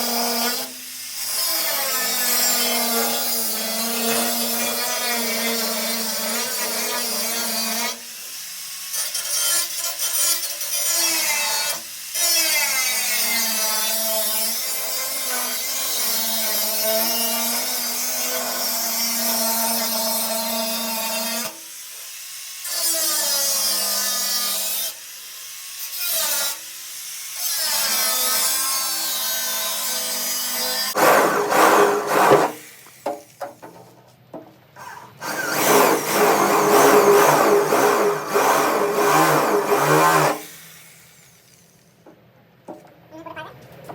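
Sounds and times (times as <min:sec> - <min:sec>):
power tool motor running: 0:30.9 - 0:33.0, 0:35.2 - 0:41.4.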